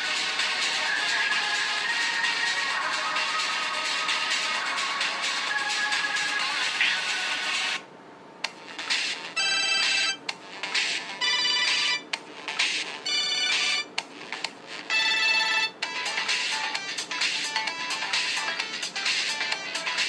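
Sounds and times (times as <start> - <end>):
electronic phone ringtone melody: 9.4 - 10.2, 11.2 - 12.0, 13.1 - 13.9, 14.9 - 18.6.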